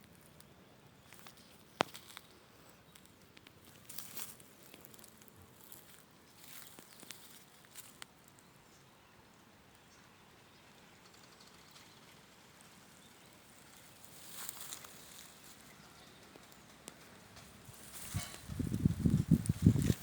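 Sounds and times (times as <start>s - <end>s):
faint outdoor ambience: 0.0s - 20.0s
brief rustle: 16.9s - 20.0s.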